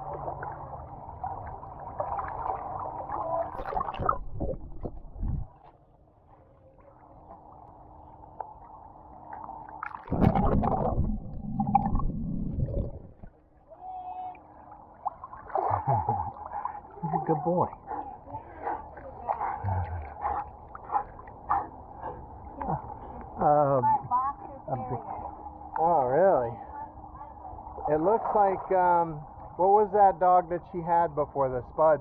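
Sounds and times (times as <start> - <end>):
loud low underwater churning: 0.0 - 5.6, 8.8 - 13.7
muffled water gurgling underwater: 0.0 - 5.6, 8.9 - 13.6.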